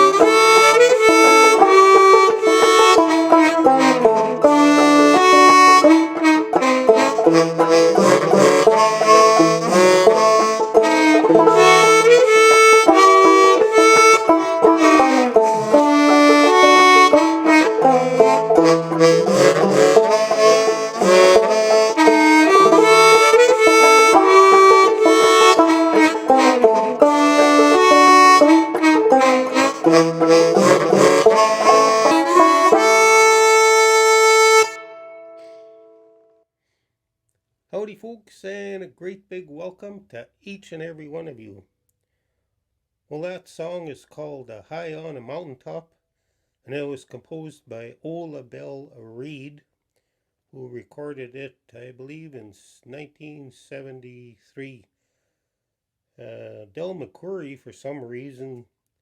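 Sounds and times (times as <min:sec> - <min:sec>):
plucked string accompaniment: 0:00.0 - 0:36.2
held harmonica chord: 0:00.0 - 0:36.3
free-reed melody: 0:00.0 - 0:36.4.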